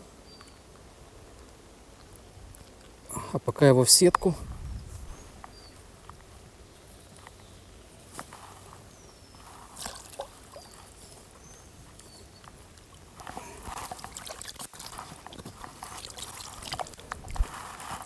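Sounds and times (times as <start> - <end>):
water sloshing and splashing: 12.6 - 18.0.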